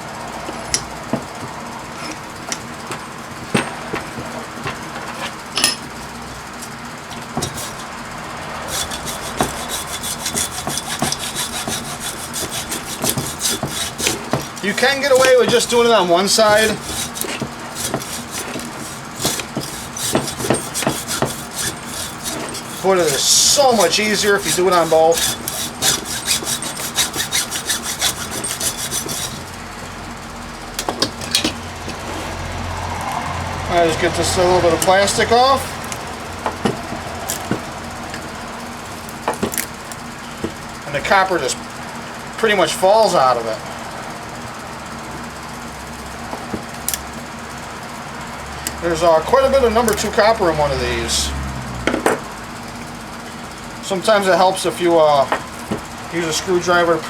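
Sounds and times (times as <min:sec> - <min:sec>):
hacksaw cutting metal: 0:07.2 - 0:29.6, 0:33.7 - 0:38.3.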